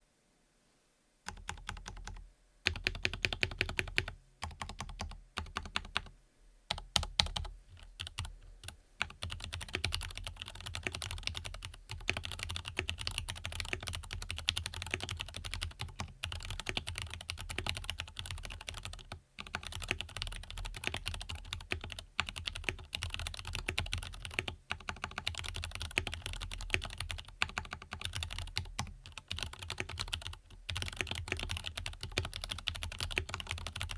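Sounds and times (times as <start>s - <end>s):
mechanical keyboard typing: 1.3s - 6.1s, 6.7s - 33.9s.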